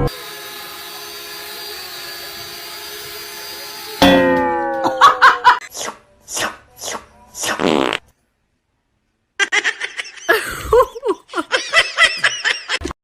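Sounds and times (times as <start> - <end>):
fart-like blasts: 7.5 - 8.0.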